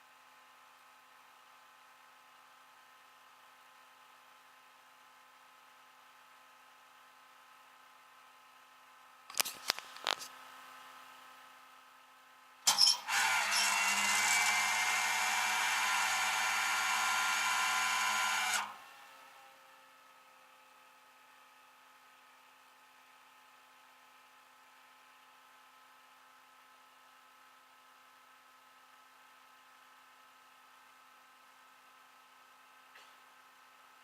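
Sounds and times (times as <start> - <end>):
motor whining: 12.7 - 18.8.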